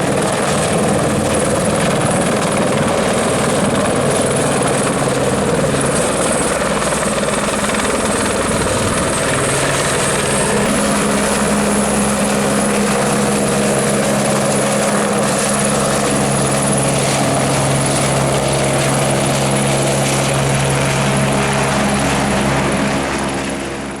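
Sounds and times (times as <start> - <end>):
helicopter engine and rotor: 0.0 - 24.0.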